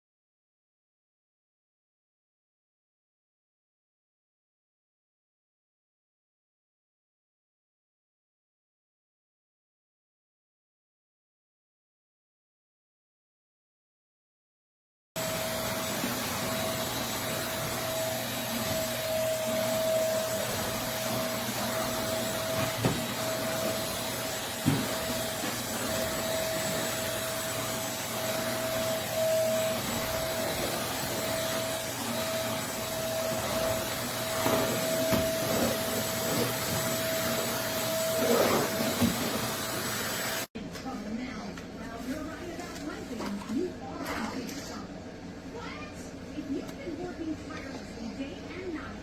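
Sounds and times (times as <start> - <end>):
stick vacuum running: 15.2 - 40.5.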